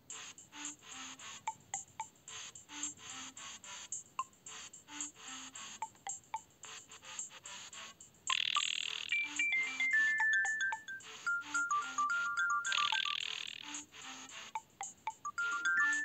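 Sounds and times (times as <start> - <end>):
cordless phone ringtone melody: 8.3 - 13.8, 15.2 - 16.0.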